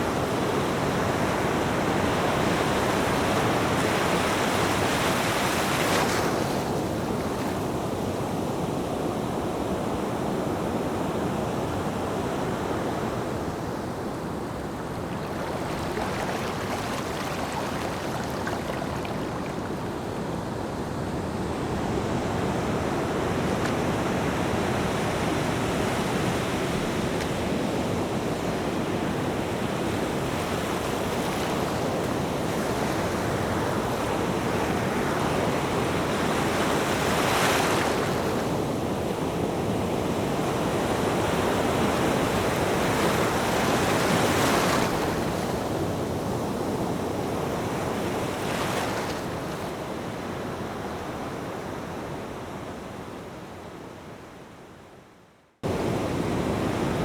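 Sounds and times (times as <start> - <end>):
waves washing on shore: 0.0 - 10.3, 11.1 - 50.7
breaking waves: 14.6 - 20.1.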